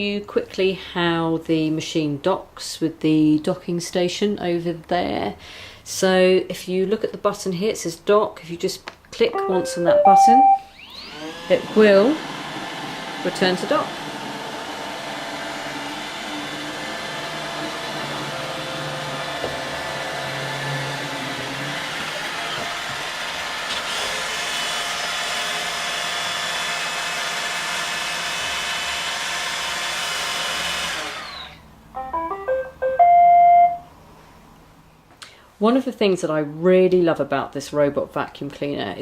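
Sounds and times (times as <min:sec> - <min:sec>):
electronic notes tune: 0:09.4 - 0:10.7, 0:32.0 - 0:33.9
robot vacuum motor whine: 0:10.8 - 0:11.6.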